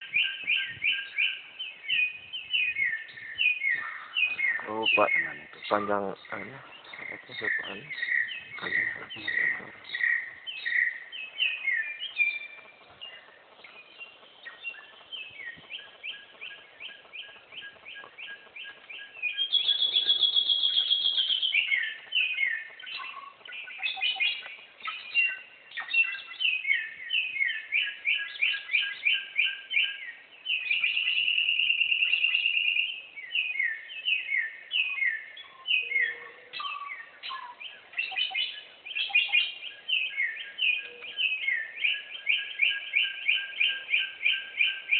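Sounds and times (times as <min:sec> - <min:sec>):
bird rapid trills: 0:06.8 - 0:26.6
bird whistling high notes: 0:19.0 - 0:21.9.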